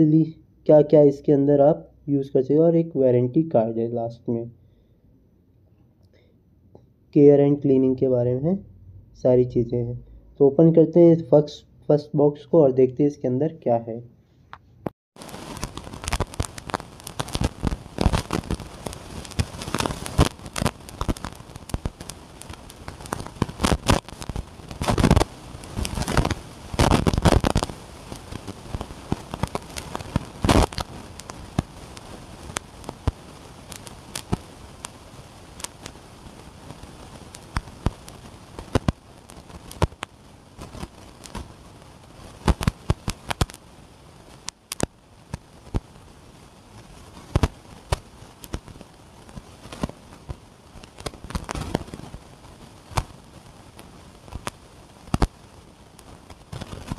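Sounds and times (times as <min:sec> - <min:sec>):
cardboard and plastic crackling: 0:15.2 - 0:35.0.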